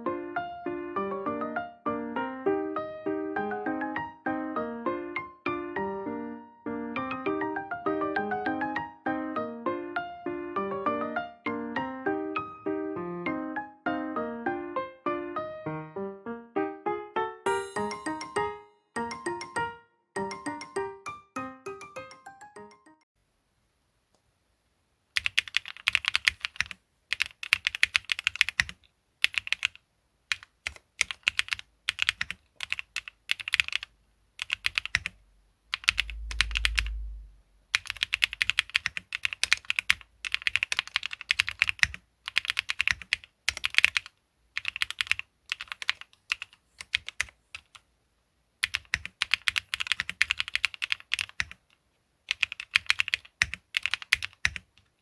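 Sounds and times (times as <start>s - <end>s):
mechanical keyboard typing: 25.2s - 37.0s, 37.7s - 47.8s, 48.6s - 51.7s, 52.3s - 54.9s
brief low rumble: 35.8s - 37.7s.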